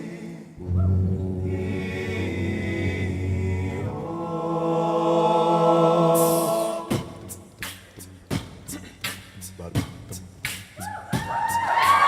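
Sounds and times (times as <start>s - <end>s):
a cappella group singing chords: 0.0s - 7.8s
beatboxed kick and snare: 6.2s - 12.0s.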